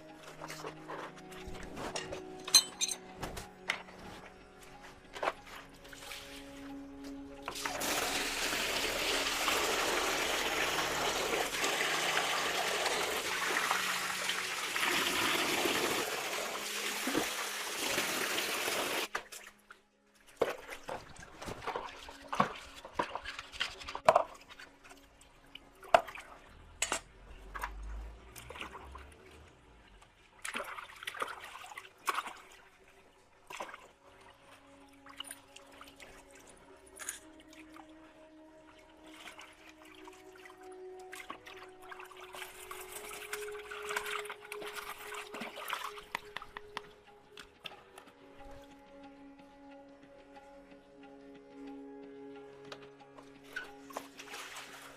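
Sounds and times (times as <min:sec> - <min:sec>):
parts knocking and clattering: 0:01.9 - 0:03.9
water dripping: 0:05.5 - 0:54.9
water spraying: 0:07.6 - 0:19.1.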